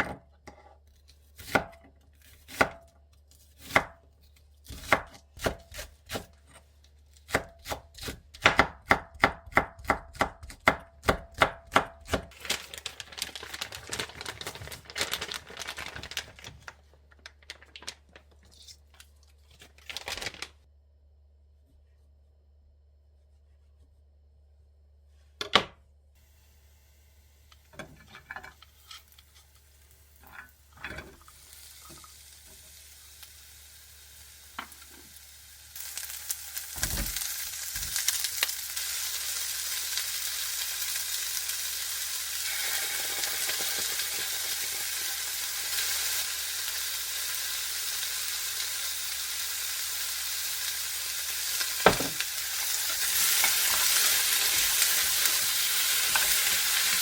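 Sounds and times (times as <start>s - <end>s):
food sizzling in hot oil: 26.2s - 57.0s.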